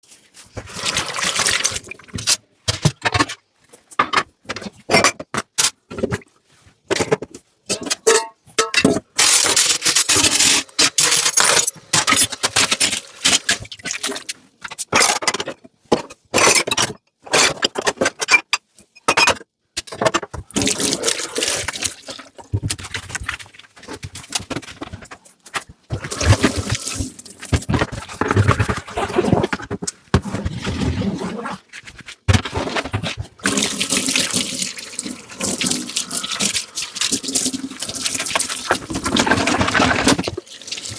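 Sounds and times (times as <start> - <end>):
running tap water: 0.7 - 1.9, 9.3 - 14.1, 20.6 - 22.2, 26.0 - 27.7, 33.4 - 40.9
dishes clinking and scraping: 7.0 - 14.0.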